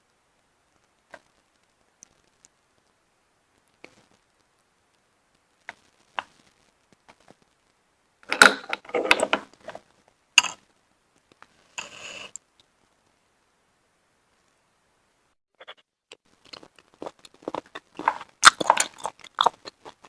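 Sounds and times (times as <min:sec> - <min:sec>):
eating snails close up: 0:00.0 - 0:20.0
crackly mouth and shell sounds: 0:00.8 - 0:02.6, 0:08.2 - 0:12.7, 0:15.6 - 0:20.0.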